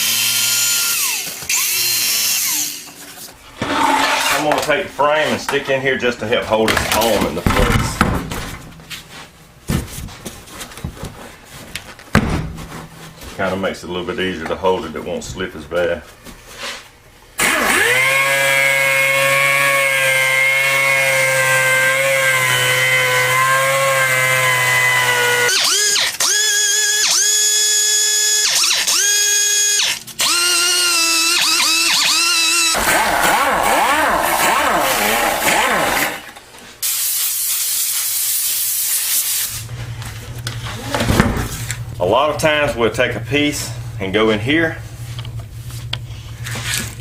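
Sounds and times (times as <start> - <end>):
power tool motor whining: 0.0 - 3.0, 17.4 - 36.4
spray hissing: 36.8 - 39.6
low steady hum: 39.6 - 47.0.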